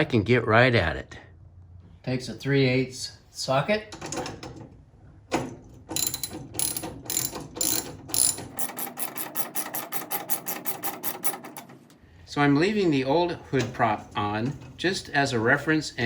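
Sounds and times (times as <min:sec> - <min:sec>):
ratchet wrench clicking: 0:06.0 - 0:11.6.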